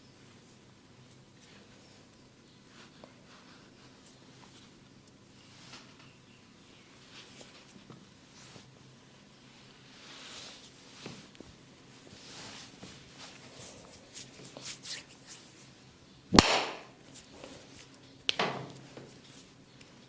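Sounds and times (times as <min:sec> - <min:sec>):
hands rubbing skin: 0:12.0 - 0:15.8.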